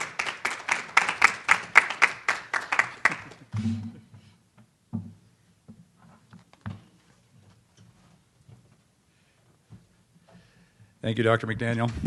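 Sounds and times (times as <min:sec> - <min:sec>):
group clapping: 0:00.0 - 0:03.5.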